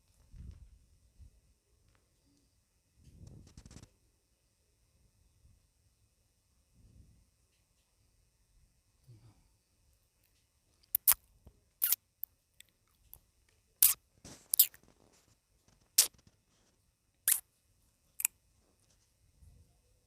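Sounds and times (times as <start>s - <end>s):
wet mouth clicks and smacks: 10.9s - 11.2s, 13.8s - 14.8s.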